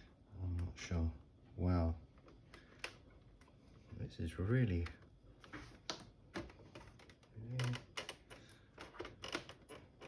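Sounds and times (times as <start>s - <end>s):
plastic clicks and creaks: 5.8s - 10.0s.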